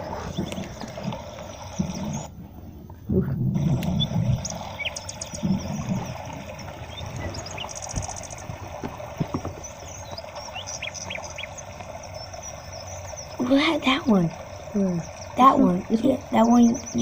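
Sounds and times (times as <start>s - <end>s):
birds chirping: 0.0s - 17.0s
faint knocks: 7.8s - 10.3s.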